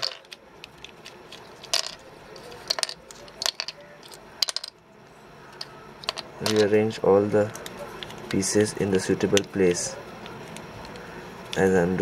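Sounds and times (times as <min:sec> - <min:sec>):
plastic puzzle pieces clicking: 0:00.0 - 0:04.8.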